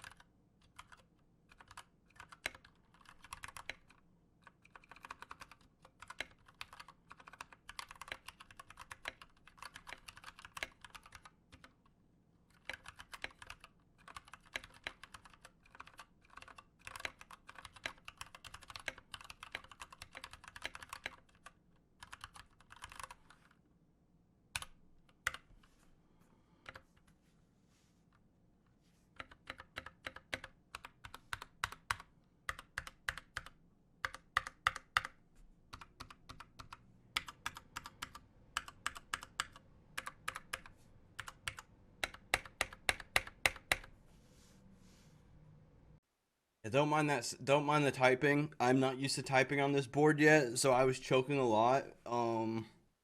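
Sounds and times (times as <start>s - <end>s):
typing on mechanical keyboard: 0.0s - 11.8s, 12.5s - 23.6s, 24.6s - 25.5s, 26.6s - 26.9s, 29.2s - 43.9s.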